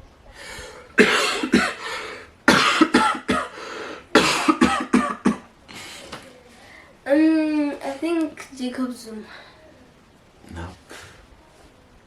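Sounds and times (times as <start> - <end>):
person coughing hard: 1.0 - 5.5.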